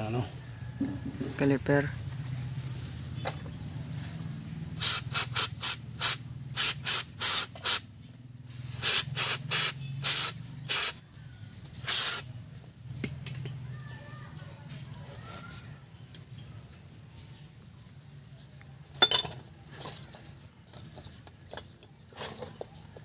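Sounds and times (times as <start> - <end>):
spray hissing from a nozzle: 4.8 - 7.9, 8.7 - 11.0, 11.8 - 12.3.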